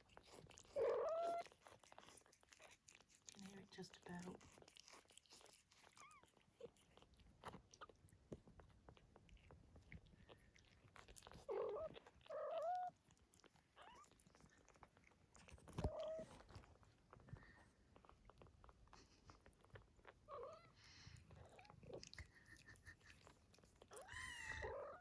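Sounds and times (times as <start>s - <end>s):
kittens suckling wet clicks: 0.0s - 25.0s
kittens mewing: 21.4s - 25.0s
kitten squeak: 23.9s - 25.0s.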